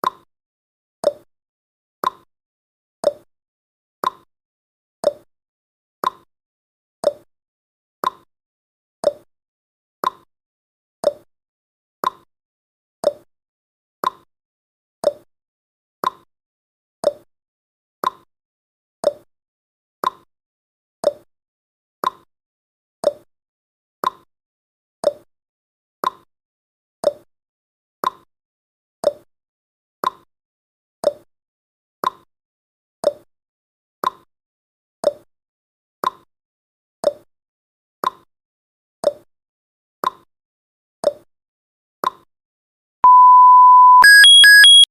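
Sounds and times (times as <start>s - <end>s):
timer ticking: 43.1s - 44.9s.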